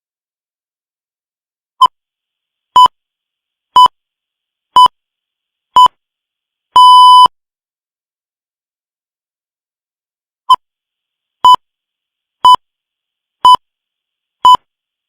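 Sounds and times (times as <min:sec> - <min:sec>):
time signal beeps: 0:06.8 - 0:07.3.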